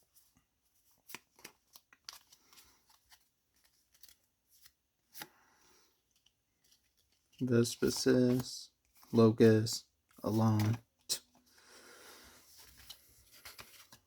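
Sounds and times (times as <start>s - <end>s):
trading cards clicking and rustling: 1.0s - 5.4s, 6.1s - 11.2s.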